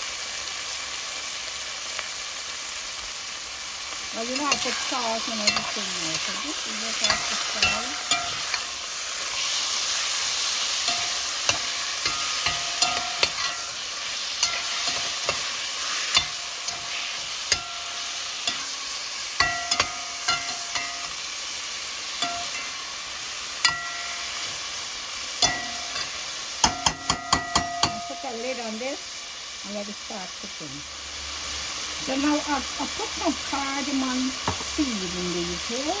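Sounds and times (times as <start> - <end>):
food sizzling in a pan: 0.0 - 36.0
utensil tapping a pan: 4.2 - 8.8, 10.6 - 21.2, 22.2 - 22.9, 23.6 - 24.8, 25.4 - 28.6, 34.4 - 34.8.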